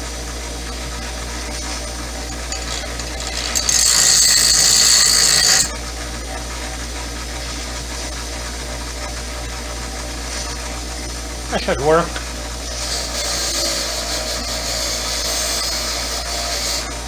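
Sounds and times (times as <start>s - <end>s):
power grinder running: 1.7s - 5.8s, 12.6s - 17.0s
loud high hissing grind: 11.5s - 17.0s.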